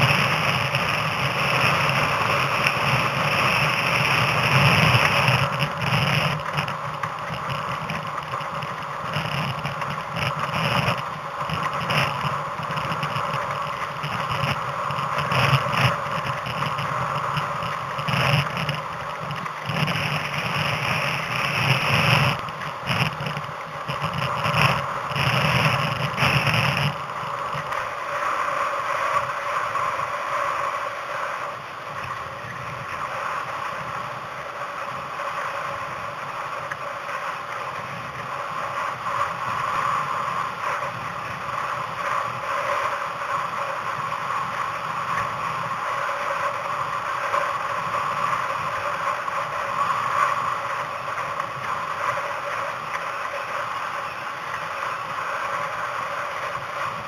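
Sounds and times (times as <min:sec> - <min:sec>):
water rushing: 0:00.0 - 0:33.6
wind gusts battering microphone: 0:00.0 - 0:57.0.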